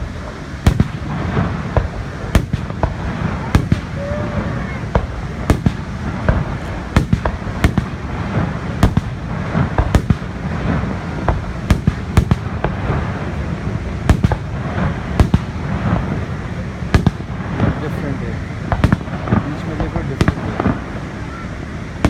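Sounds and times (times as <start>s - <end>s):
fireworks bangs: 0.0s - 22.0s
steady low rumble: 0.0s - 22.0s.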